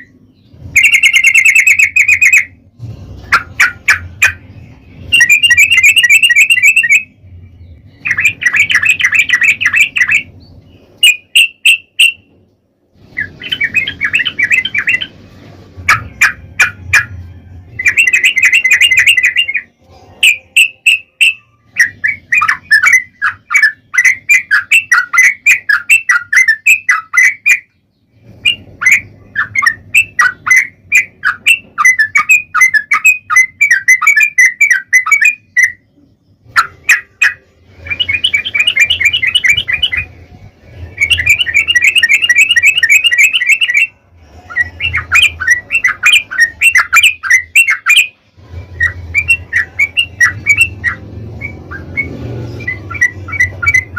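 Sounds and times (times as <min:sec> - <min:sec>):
bird singing chattering notes: 0:03.3 - 0:12.3, 0:17.8 - 0:40.1, 0:41.0 - 0:48.2.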